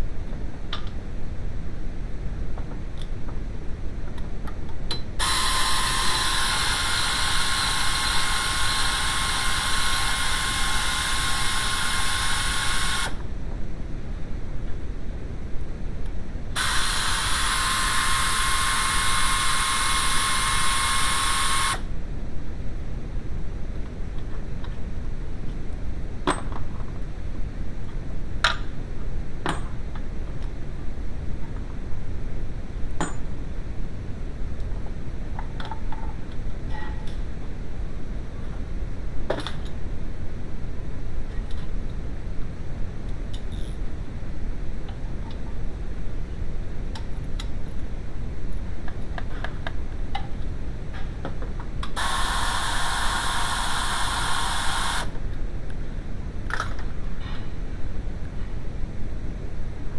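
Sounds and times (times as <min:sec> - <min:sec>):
steady low hum: 0:00.0 - 0:59.9
power tool hissing: 0:05.2 - 0:13.2, 0:52.0 - 0:55.1
power tool whine: 0:05.2 - 0:13.2, 0:16.6 - 0:21.9, 0:52.0 - 0:55.1.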